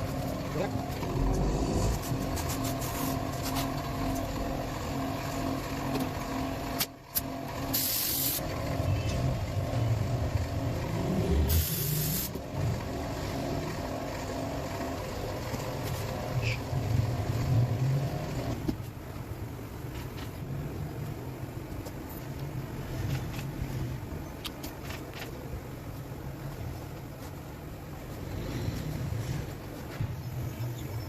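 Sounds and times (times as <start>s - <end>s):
traffic rumble: 0.0s - 7.7s, 8.3s - 31.0s
compressed air hisses: 7.7s - 8.4s, 11.5s - 12.4s.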